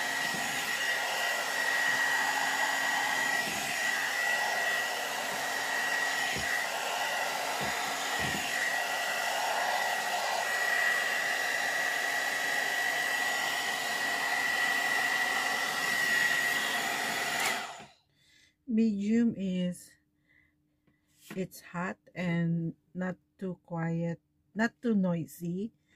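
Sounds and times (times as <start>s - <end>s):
hair dryer brush blowing with whine: 0.0s - 18.0s.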